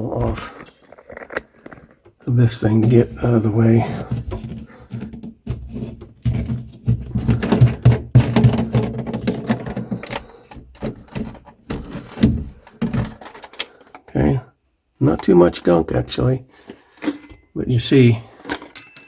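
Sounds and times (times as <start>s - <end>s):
plastic drain pipe knocks and scrapes: 2.8s - 14.2s.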